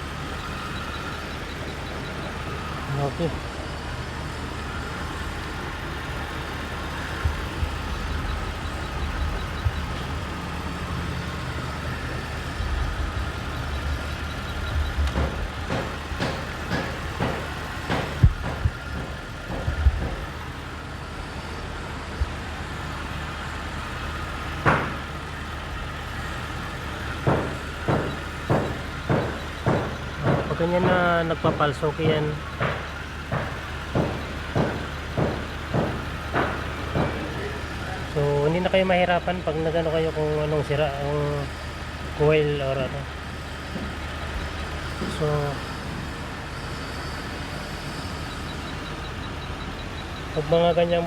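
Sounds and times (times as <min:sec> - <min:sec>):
car engine idling: 0:00.0 - 0:51.0
sharp clicks and knocks: 0:07.1 - 0:20.6, 0:24.6 - 0:25.2, 0:27.1 - 0:37.7.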